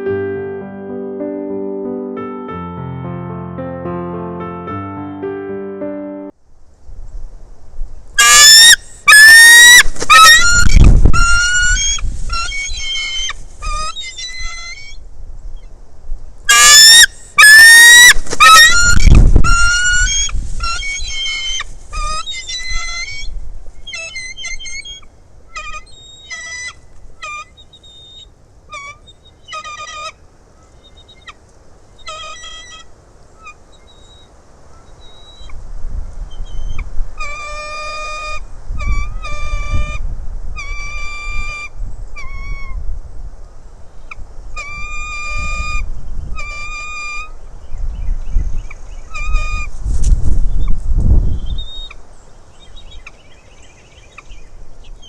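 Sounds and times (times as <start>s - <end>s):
eagles chittering calls: 8.2s - 15.0s, 16.5s - 31.4s, 32.0s - 35.5s, 36.4s - 40.0s.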